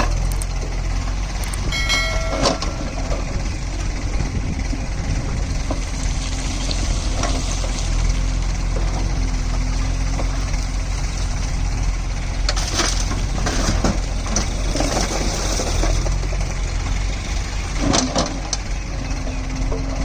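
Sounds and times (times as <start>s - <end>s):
tractor diesel engine running: 0.0s - 20.0s.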